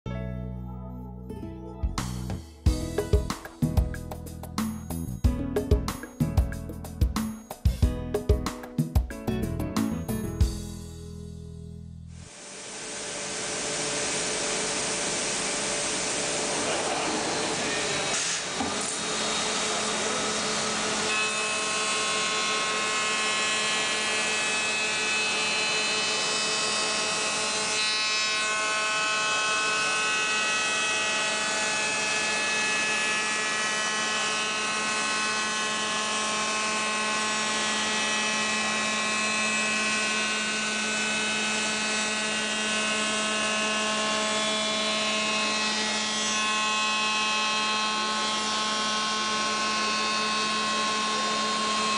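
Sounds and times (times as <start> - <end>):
wood router spindle whine: 12.2 - 51.9
machining noise: 12.3 - 21.4.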